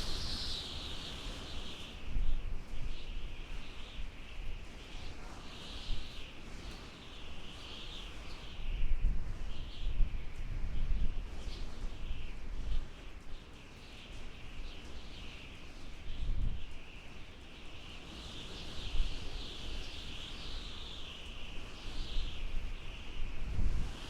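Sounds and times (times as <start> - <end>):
low rumbling wind gusts: 0.0 - 6.1, 18.8 - 24.0
wind howling and whistling: 0.0 - 13.0, 17.7 - 24.0.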